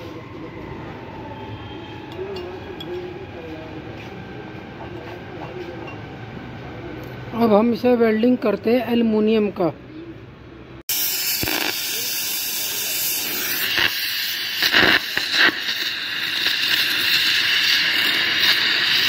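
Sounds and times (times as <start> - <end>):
welding arc hissing: 10.9 - 19.0
welding crackles: 10.9 - 19.0.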